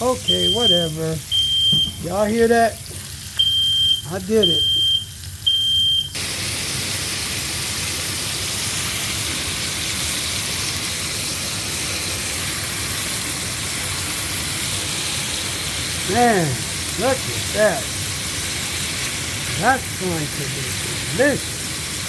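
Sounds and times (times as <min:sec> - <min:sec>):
smoke alarm beep: 0:00.0 - 0:02.2, 0:03.4 - 0:06.2
food sizzling in hot pan: 0:00.0 - 0:22.0.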